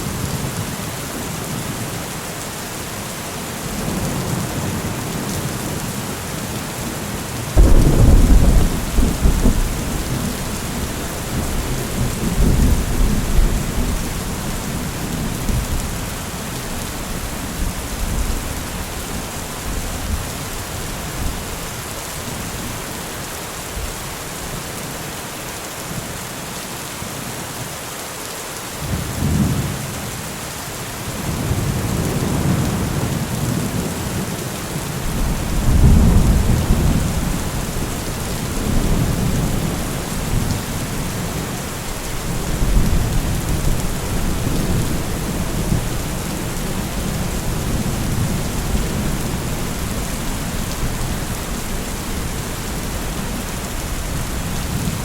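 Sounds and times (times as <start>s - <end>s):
heavy rain falling: 0.0s - 55.0s
low thunder rumbling: 7.6s - 21.5s, 35.0s - 55.0s.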